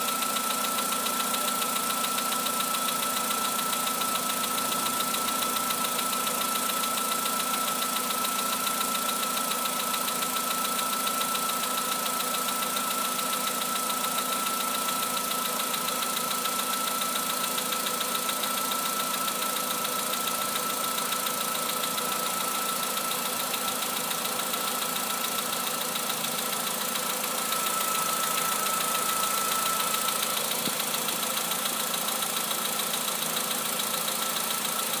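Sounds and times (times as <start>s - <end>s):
car engine running with metallic knock: 0.0s - 35.0s.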